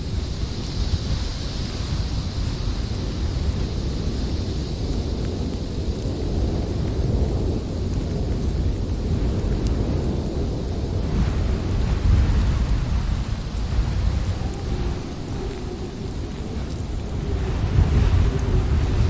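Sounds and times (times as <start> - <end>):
blizzard wind blowing: 0.0 - 19.0.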